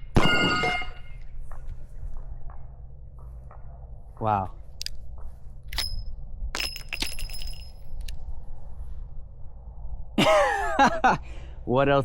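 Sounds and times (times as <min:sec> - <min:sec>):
light metallic clinks: 0:05.7 - 0:08.2.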